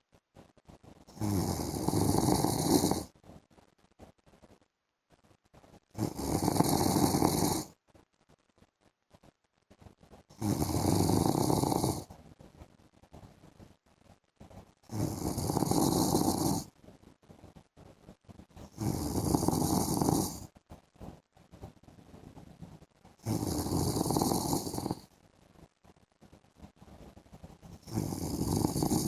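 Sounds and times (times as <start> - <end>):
man snoring: 1.1 - 3.1, 6.0 - 7.7, 10.4 - 12.1, 14.9 - 16.7, 18.7 - 20.4, 23.2 - 25.0, 27.8 - 29.0.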